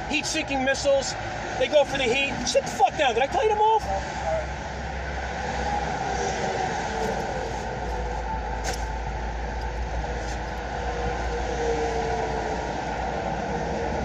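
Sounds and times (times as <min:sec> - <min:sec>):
traffic rumble and tyre hiss: 0:00.0 - 0:14.0.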